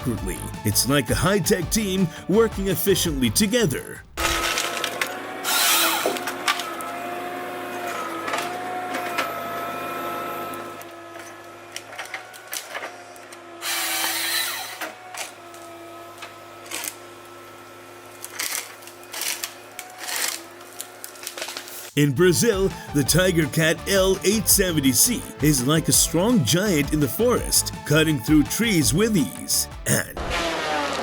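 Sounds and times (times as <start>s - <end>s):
harvester engine and hydraulics whine: 4.5s - 12.2s.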